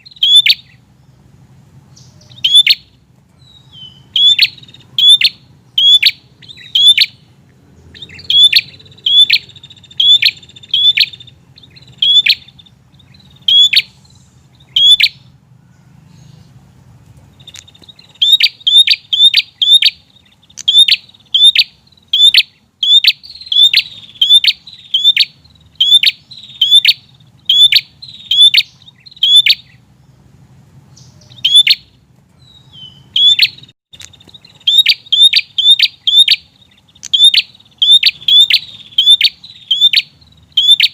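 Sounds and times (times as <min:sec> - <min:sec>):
bird sharp clicking chirps: 0:03.8 - 0:15.3, 0:17.4 - 0:29.8, 0:32.8 - 0:40.9.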